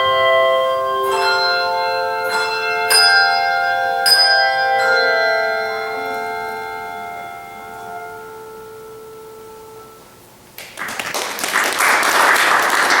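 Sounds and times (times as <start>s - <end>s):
church bells ringing: 0.0s - 10.2s.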